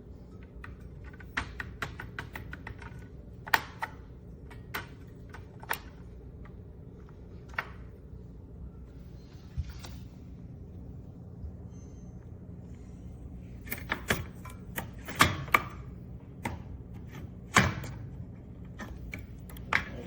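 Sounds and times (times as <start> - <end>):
low steady hum: 0.0 - 20.0
sharp clicks and knocks: 0.4 - 6.6.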